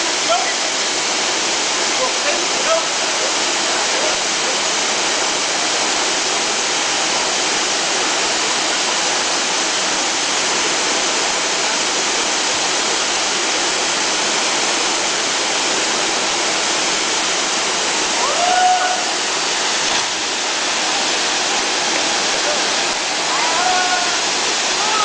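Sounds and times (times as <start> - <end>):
waterfall rushing: 0.0 - 25.0.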